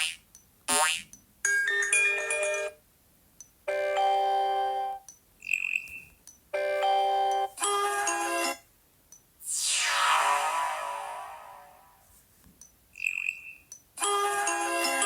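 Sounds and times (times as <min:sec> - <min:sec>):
phone notification tones: 0:06.6 - 0:07.6.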